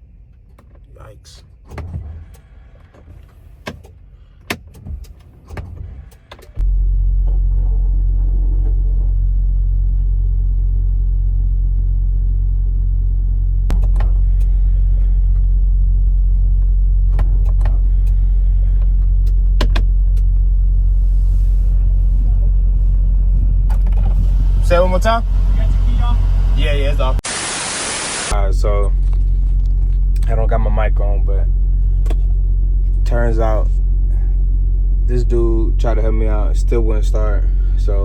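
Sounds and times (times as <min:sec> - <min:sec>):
diesel truck engine idling: 0:05.2 - 0:27.2, 0:28.1 - 0:38.0
sharp clicks and knocks: 0:18.8 - 0:20.3.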